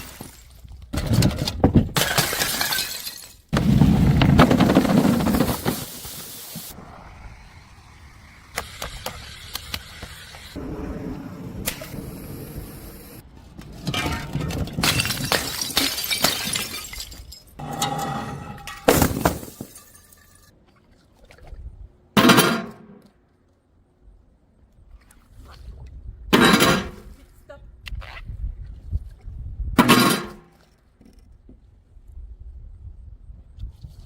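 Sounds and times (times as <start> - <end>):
glass bottles smashing: 0.0 - 0.7, 2.0 - 6.0, 13.9 - 20.5
glass shards clinking: 14.8 - 20.5.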